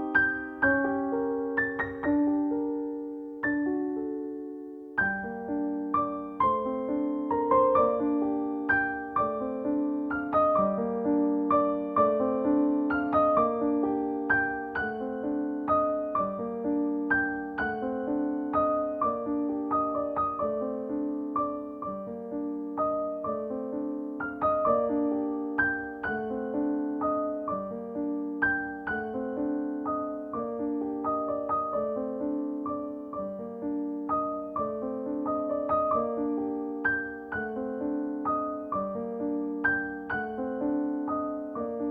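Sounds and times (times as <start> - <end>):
gentle piano tune: 0.0 - 41.9.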